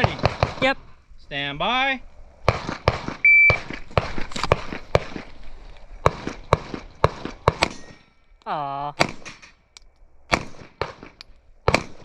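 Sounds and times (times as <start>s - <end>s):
pistol shots: 0.0s - 0.7s, 2.5s - 5.2s, 6.0s - 8.0s, 9.0s - 9.5s, 10.3s - 12.0s
shot timer beep: 3.3s - 3.6s.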